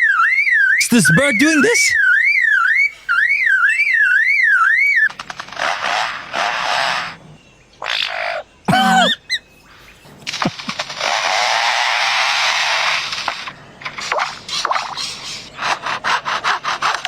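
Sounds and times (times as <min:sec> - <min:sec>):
bird warbling siren-like: 0:00.0 - 0:05.2.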